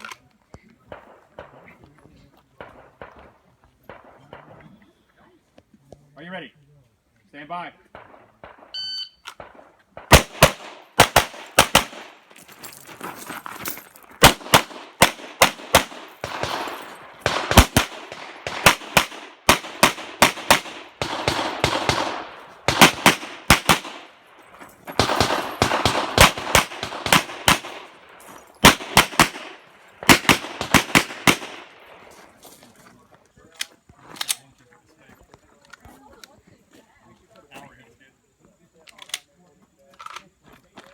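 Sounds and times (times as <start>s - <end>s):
handgun shots: 9.3s - 12.2s, 14.2s - 24.2s, 24.8s - 31.8s.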